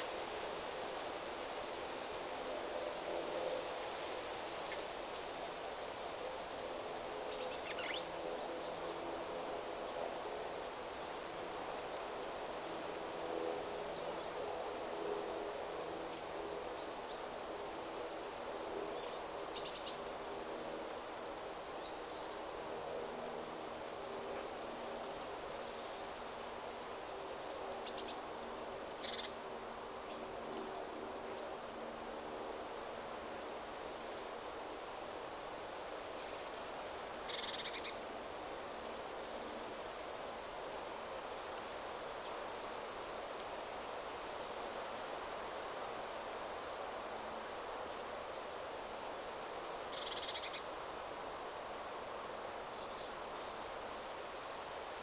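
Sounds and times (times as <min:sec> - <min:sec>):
wind through trees: 0:00.0 - 0:55.0
high-pitched bird calls: 0:07.5 - 0:08.2.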